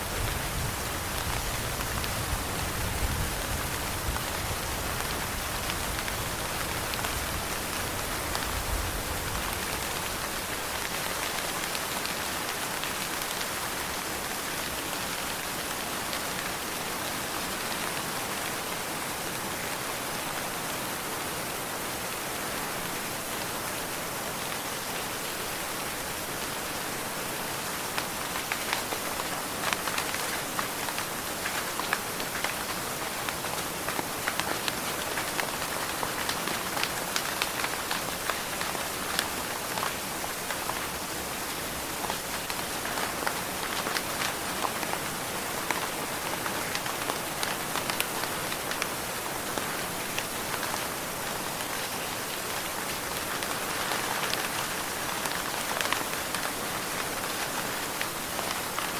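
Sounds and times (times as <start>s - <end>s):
steady rain hissing: 0.0s - 58.9s
raindrops ticking on a surface: 27.9s - 58.9s.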